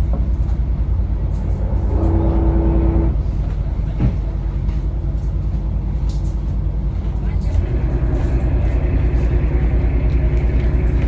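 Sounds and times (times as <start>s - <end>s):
boat engines deep rumble: 0.0s - 11.0s
steady tone: 1.5s - 3.2s.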